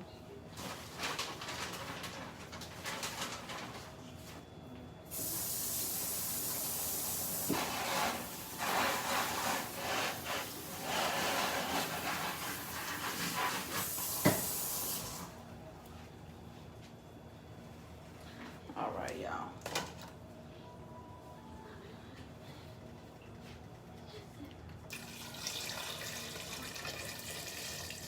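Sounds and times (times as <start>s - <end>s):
water running from tap: 5.1s - 15.3s, 24.9s - 28.0s.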